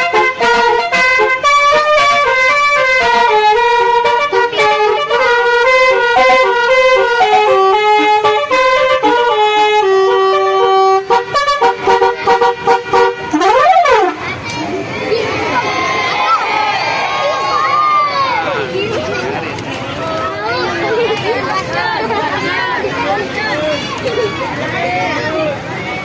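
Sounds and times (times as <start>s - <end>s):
electric trumpet horn melody: 0.0s - 14.2s.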